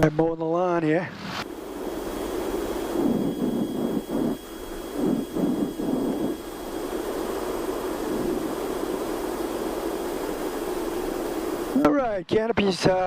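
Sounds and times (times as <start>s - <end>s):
aircraft engine droning: 0.9s - 11.8s.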